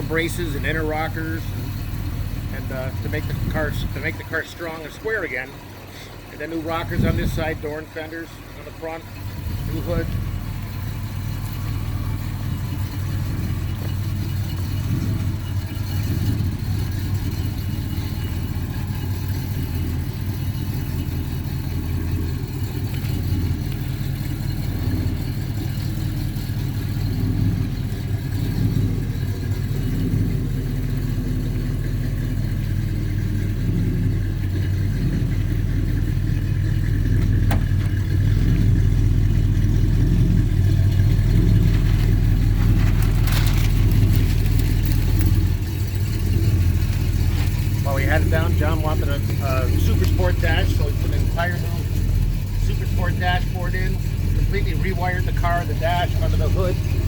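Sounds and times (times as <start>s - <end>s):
car engine running: 0.0s - 57.0s.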